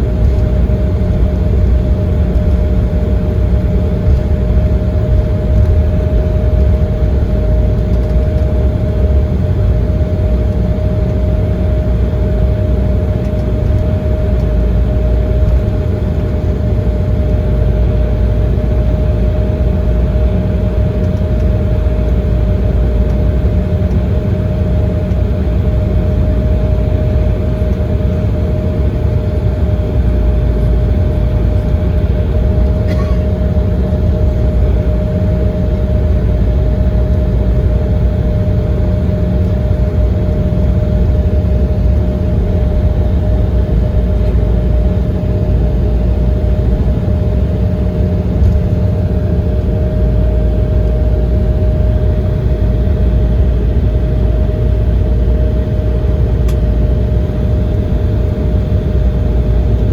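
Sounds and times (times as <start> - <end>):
airliner cabin engine drone: 0.0 - 59.9.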